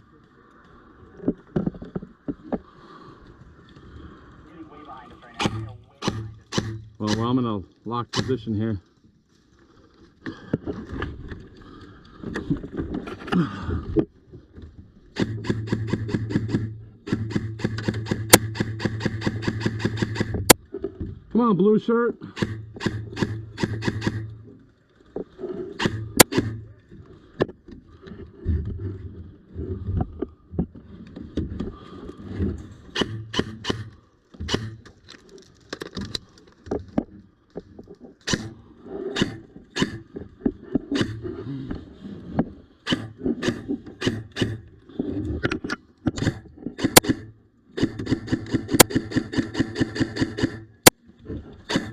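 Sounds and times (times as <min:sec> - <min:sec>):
low uneven rumble: 0:00.0 - 0:15.2
airsoft gunshots snapping: 0:05.4 - 0:07.3
sharp clicks: 0:15.2 - 0:20.6, 0:22.4 - 0:24.3, 0:33.0 - 0:34.9, 0:45.5 - 0:51.0.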